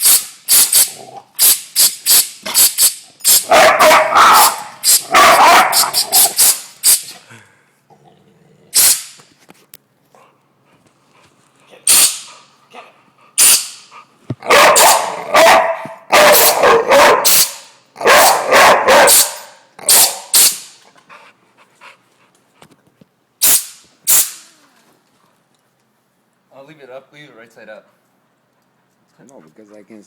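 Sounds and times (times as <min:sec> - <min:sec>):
air gun hissing blasts: 0:00.0 - 0:03.5, 0:04.3 - 0:05.0, 0:05.7 - 0:07.2, 0:08.8 - 0:09.2, 0:11.9 - 0:12.3, 0:13.4 - 0:13.9, 0:17.2 - 0:17.8, 0:19.1 - 0:20.8, 0:23.4 - 0:24.5
dog barking and snapping: 0:00.5 - 0:07.0, 0:14.4 - 0:20.6.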